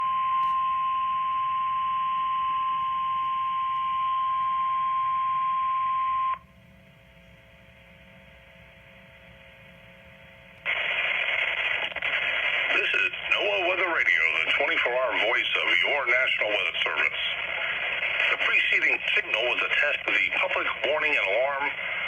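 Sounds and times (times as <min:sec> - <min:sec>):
radio hiss: 0:10.7 - 0:22.0.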